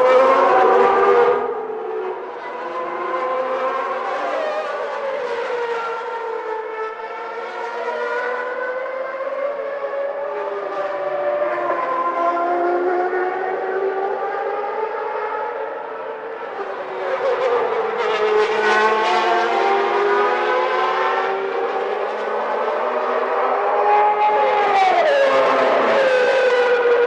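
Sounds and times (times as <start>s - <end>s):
racing car engines screaming: 18.8s - 27.0s.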